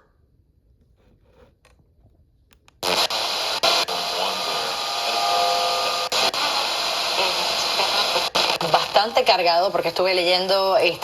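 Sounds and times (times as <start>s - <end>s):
fm radio static hiss: 2.8s - 11.0s.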